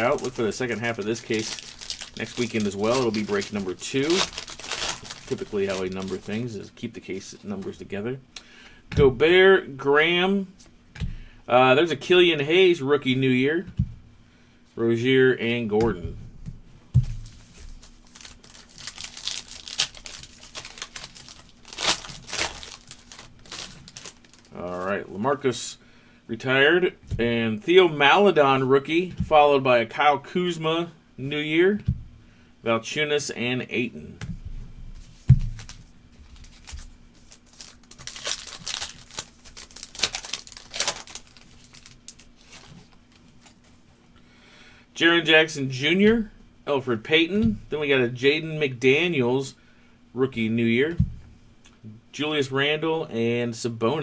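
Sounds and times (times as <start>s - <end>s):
wrapper tearing and crinkling: 0.0s - 6.5s, 17.2s - 24.9s, 35.6s - 43.6s.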